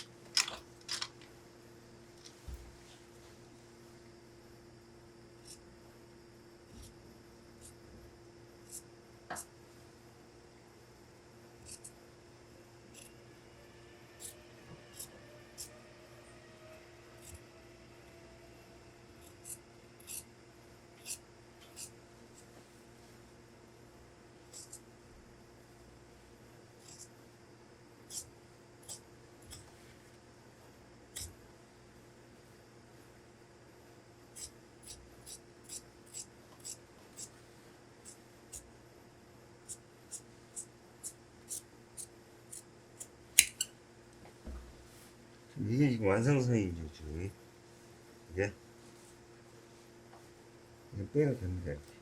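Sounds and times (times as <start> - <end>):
faint steady hum: 0.0 - 52.0
shears snipping fabric: 11.6 - 12.0, 19.2 - 20.3, 21.0 - 22.6, 24.4 - 24.9, 26.8 - 27.2, 28.0 - 30.0, 34.3 - 37.4, 39.6 - 43.7.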